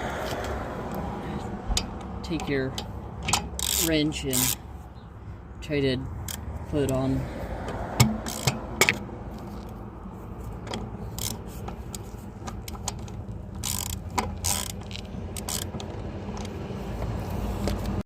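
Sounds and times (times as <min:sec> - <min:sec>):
ratchet wrench clicking: 0:01.7 - 0:04.7, 0:06.2 - 0:07.0, 0:08.0 - 0:09.8, 0:10.7 - 0:18.0.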